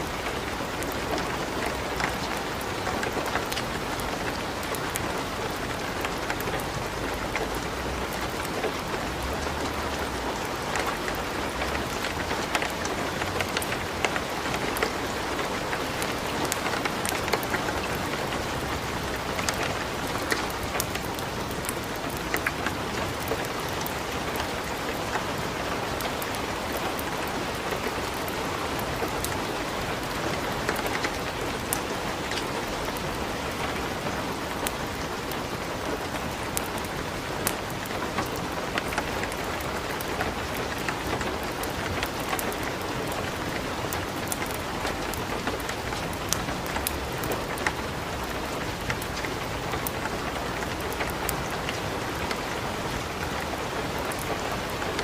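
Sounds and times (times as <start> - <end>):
light rain falling: 0.0 - 55.0
burning wood crackling: 0.1 - 25.3, 34.4 - 55.0.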